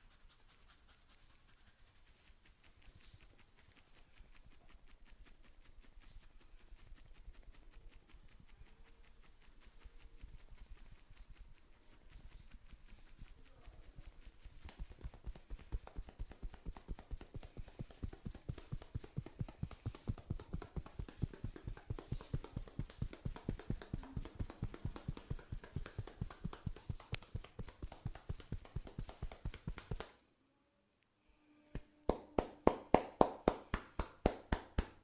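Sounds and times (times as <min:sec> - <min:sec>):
massage hammer tapping: 0:14.6 - 0:30.1.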